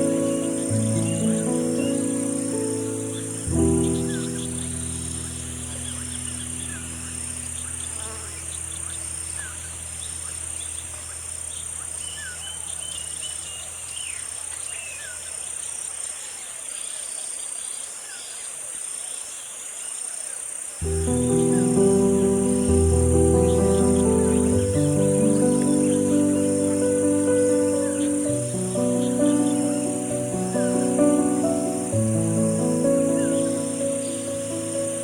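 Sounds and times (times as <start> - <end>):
background music chords: 0.0 - 11.6, 20.8 - 35.0
pulsing insect call: 0.0 - 17.2, 20.5 - 35.0
insects droning: 0.0 - 35.0.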